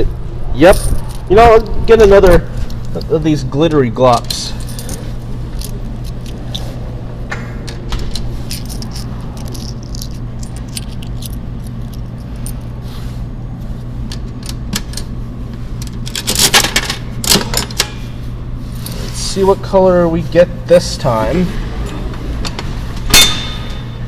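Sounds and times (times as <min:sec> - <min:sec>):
steady low hum: 0:00.0 - 0:24.0
coins and keys jingling: 0:04.5 - 0:06.8, 0:08.4 - 0:12.7.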